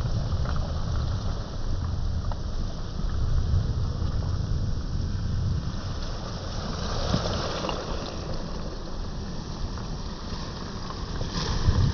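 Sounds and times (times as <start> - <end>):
wind buffeting microphone: 0.0 - 11.9
sea waves on beach: 2.7 - 11.9.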